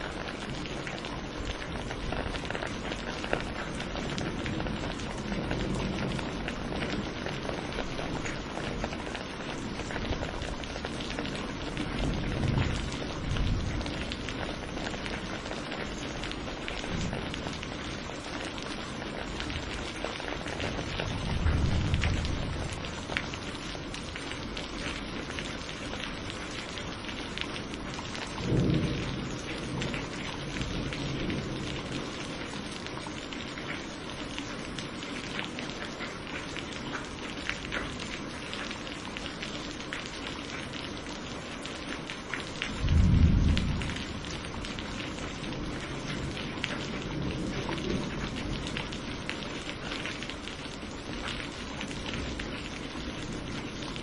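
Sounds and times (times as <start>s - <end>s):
thunder rumbles: 0.0s - 25.5s, 27.6s - 33.1s, 42.6s - 50.2s
steady rain falling: 0.0s - 54.0s
thunder clap: 20.7s - 22.8s, 42.7s - 44.8s.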